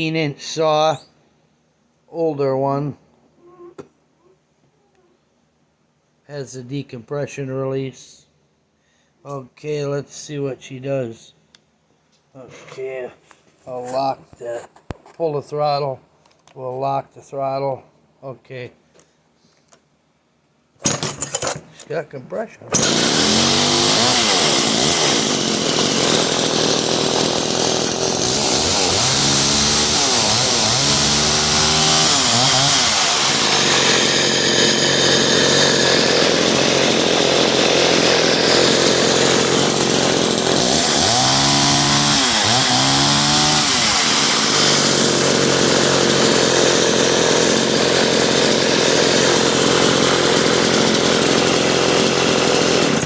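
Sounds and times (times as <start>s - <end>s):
chainsaw engine revving: 22.7s - 53.0s.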